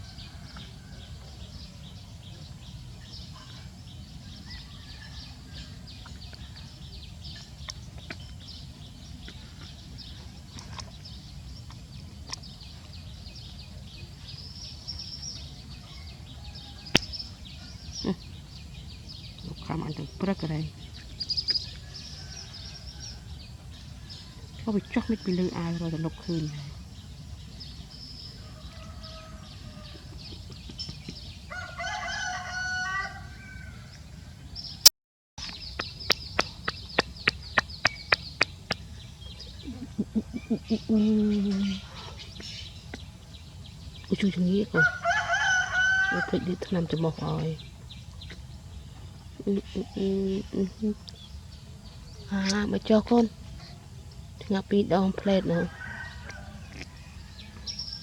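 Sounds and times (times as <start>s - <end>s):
small birds chirping: 0.0s - 33.2s, 35.4s - 58.0s
rooster crowing: 16.3s - 17.0s, 28.4s - 30.1s, 31.5s - 34.0s, 44.7s - 46.6s, 55.4s - 57.8s
sharp clicks: 35.4s - 38.8s.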